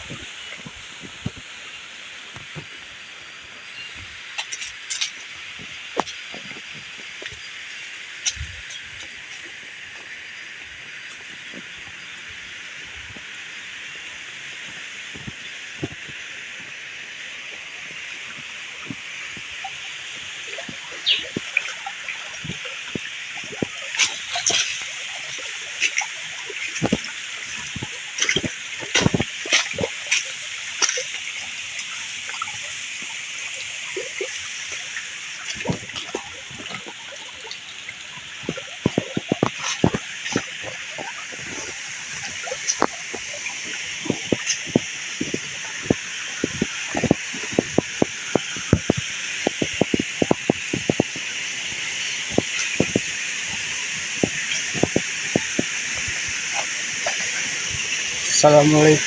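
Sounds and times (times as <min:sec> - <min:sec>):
water splashes: 0:00.0 - 0:59.0
waterfall and stream rushing: 0:00.0 - 0:59.0
waterfall rushing: 0:38.4 - 0:59.0.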